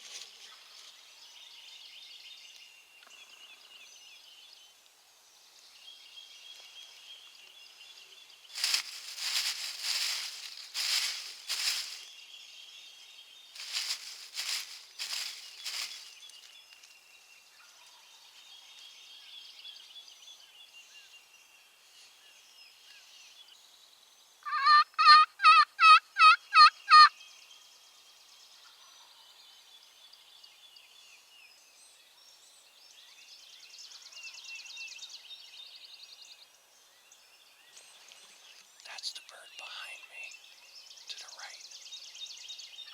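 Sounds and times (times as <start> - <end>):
faint songbirds singing: 0.0 - 42.9
turkey yelps: 24.5 - 27.1.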